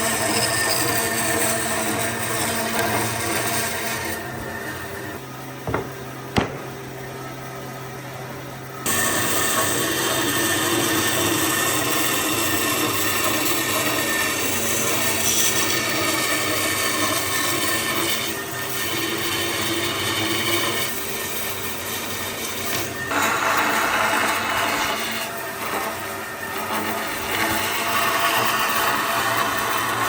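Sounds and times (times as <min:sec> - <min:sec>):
power tool cutting wood: 0:00.0 - 0:06.7, 0:22.0 - 0:30.0.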